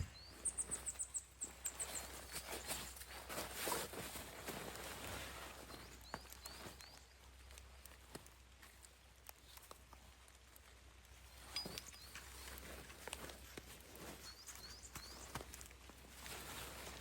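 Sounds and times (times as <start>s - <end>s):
small bird chirping: 0.0s - 3.1s, 5.6s - 7.6s, 11.2s - 15.8s.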